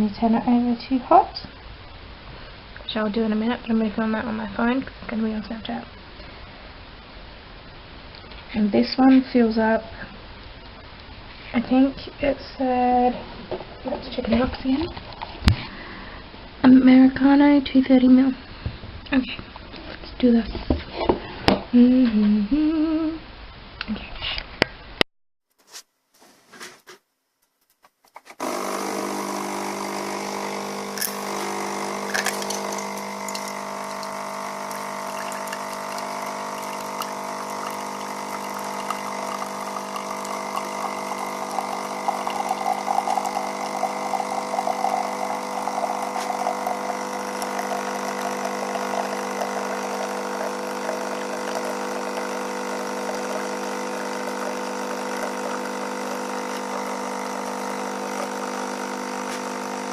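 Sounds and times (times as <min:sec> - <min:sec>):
coffee machine pump humming: 0:28.4 - 0:59.9
liquid flowing: 0:29.4 - 0:59.7.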